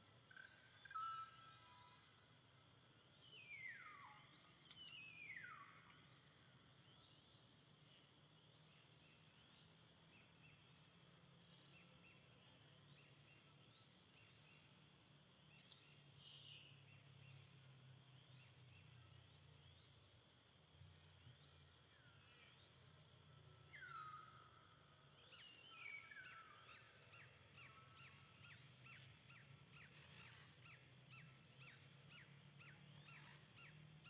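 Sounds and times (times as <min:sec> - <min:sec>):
soft bird chirps: 0:03.1 - 0:14.8, 0:15.5 - 0:20.1.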